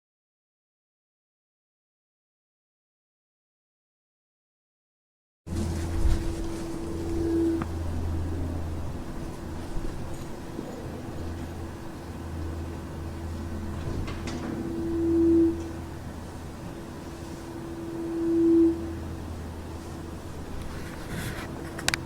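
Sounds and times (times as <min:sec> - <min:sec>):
horn-like tone: 0:05.5 - 0:21.4
low droning hum: 0:05.5 - 0:22.0.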